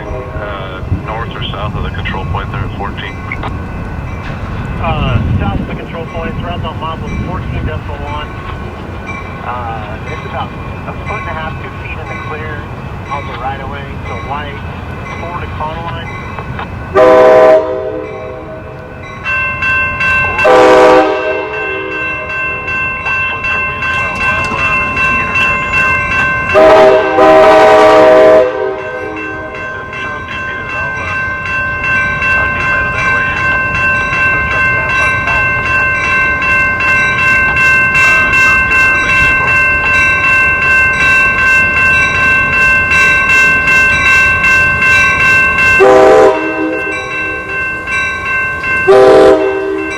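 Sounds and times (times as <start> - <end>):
bell ringing: 0.0 - 17.1, 18.0 - 27.2, 28.8 - 49.9
train passing: 0.0 - 49.9
locomotive horn blasts: 16.9 - 18.8, 20.4 - 22.1, 26.5 - 29.6, 45.8 - 47.4, 48.9 - 49.9.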